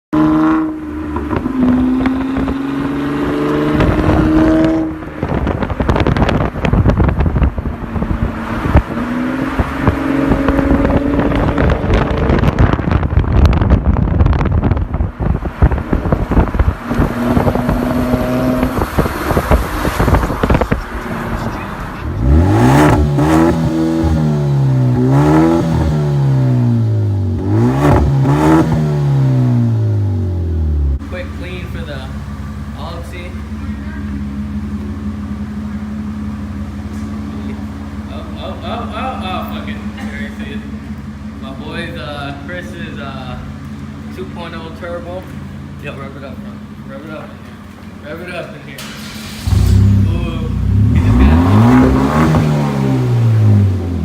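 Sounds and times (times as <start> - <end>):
car engine revving: 0.1 - 54.0
wind buffeting microphone: 1.1 - 21.6.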